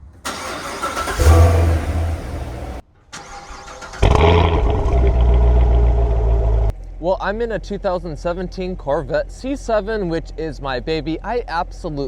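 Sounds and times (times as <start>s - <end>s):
car engine running loud: 0.3s - 2.8s, 3.7s - 6.7s.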